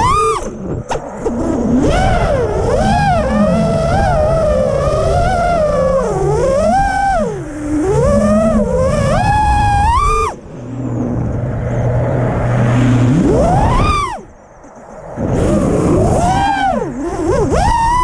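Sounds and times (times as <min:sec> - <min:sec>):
drone motors whining: 0:00.0 - 0:18.0.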